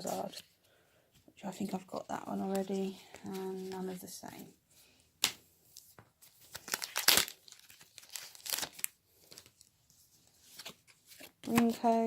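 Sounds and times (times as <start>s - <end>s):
foil wrapper tearing and crinkling: 6.5s - 9.5s.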